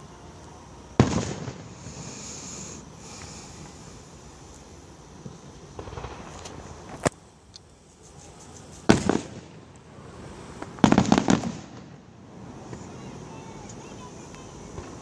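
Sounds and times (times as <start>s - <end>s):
firework burst with rattling tail: 0.9s - 4.5s, 5.2s - 7.1s, 7.9s - 15.0s
fireworks bangs: 1.0s - 3.8s, 5.2s - 7.2s, 8.6s - 15.0s.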